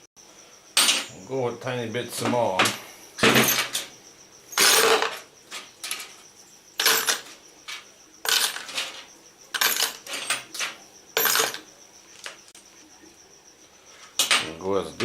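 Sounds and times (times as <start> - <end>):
metal tools clinking and rattling: 0.8 - 1.2, 2.2 - 3.9, 4.5 - 6.2, 6.8 - 11.7, 14.1 - 14.6.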